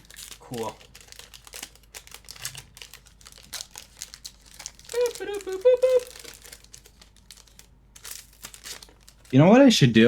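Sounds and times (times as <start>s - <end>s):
foil wrappers crinkling: 0.0s - 10.0s
person humming: 4.9s - 6.3s.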